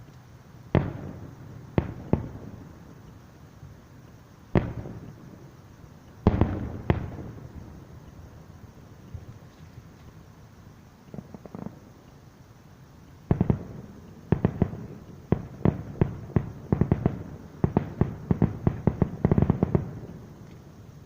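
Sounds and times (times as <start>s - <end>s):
fireworks bursting: 0.6s - 21.0s.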